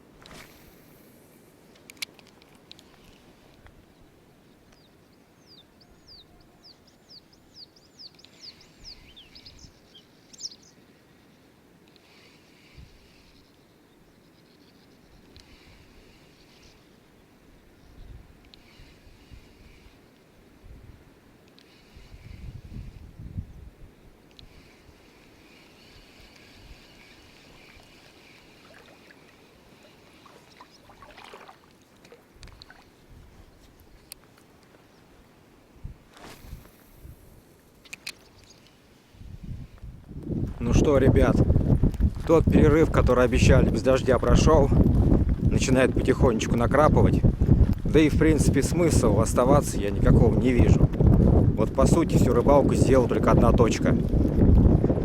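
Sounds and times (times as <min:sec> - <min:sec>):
small clicks: 0:01.7 - 0:03.8, 0:08.1 - 0:08.4, 0:11.8 - 0:12.3, 0:21.4 - 0:21.8, 0:24.2 - 0:24.6, 0:37.8 - 0:38.8
songbird singing: 0:03.8 - 0:18.9, 0:23.2 - 0:35.3, 0:37.8 - 0:38.8
water washing at river's edge: 0:25.0 - 0:33.0
brief splash: 0:30.2 - 0:32.9.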